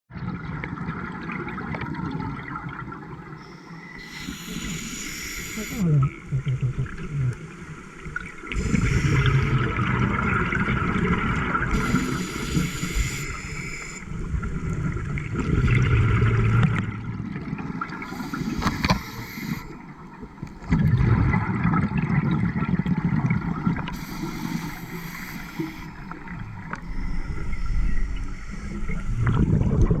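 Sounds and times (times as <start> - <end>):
regulator inhale hiss: 3.4 - 5.9, 8.4 - 9.7, 11.7 - 14.2, 18.0 - 20.0, 23.8 - 29.0
gurgling exhaled bubbles: 4.1 - 30.0.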